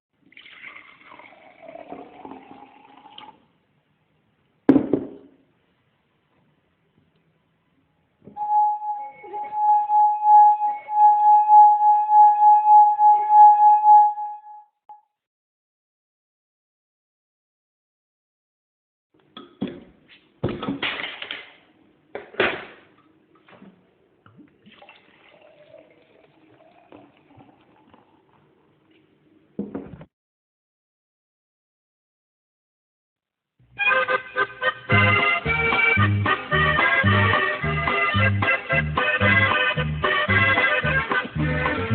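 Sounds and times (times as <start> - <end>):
liquid pouring and splashing: 0.2 - 3.4, 24.3 - 29.0
beer head fizzing: 0.3 - 3.4, 24.4 - 28.9.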